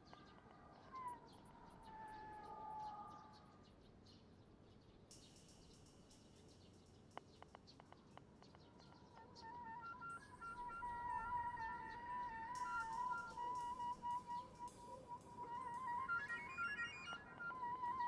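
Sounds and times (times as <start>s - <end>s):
bird chirps: 5.2s - 18.0s
wavering distant tone: 9.5s - 18.0s.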